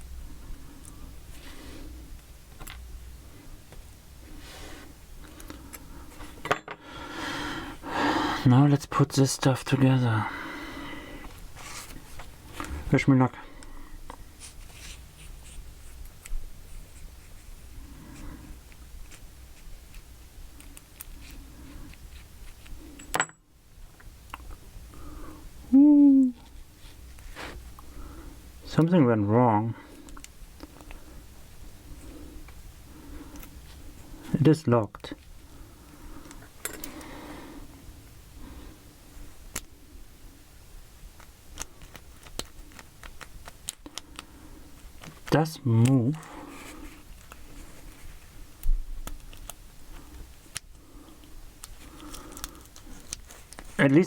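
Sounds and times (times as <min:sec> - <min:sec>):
small parts rustling: 0:41.2 - 0:54.0.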